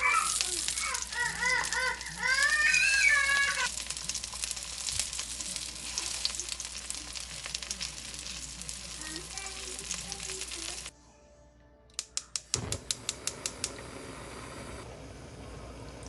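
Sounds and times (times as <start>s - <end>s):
food sizzling in oil: 0.0s - 10.9s.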